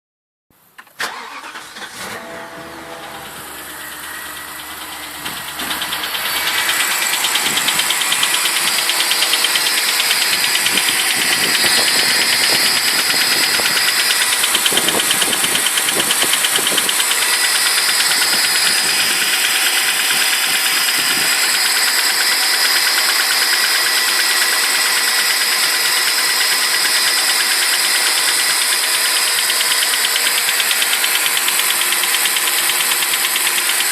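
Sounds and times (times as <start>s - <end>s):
engine starting and idling: 0.8s - 33.9s
engine clattering tick: 6.8s - 19.3s, 28.1s - 33.9s.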